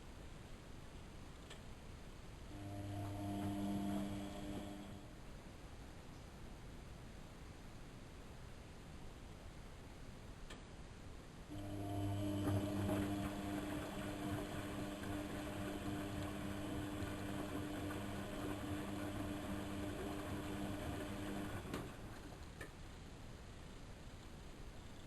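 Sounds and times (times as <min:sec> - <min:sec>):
washing machine hum: 0:02.5 - 0:05.2, 0:11.5 - 0:22.9.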